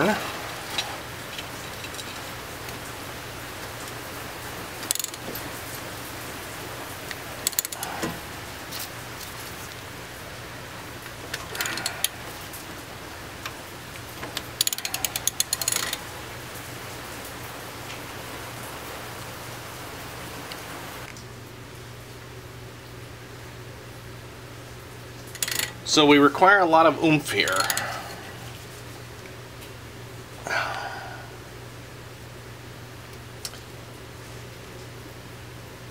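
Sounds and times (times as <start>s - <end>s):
socket ratchet clicking: 4.8s - 5.2s, 7.5s - 7.9s, 11.5s - 11.9s, 14.4s - 16.0s, 25.3s - 25.8s.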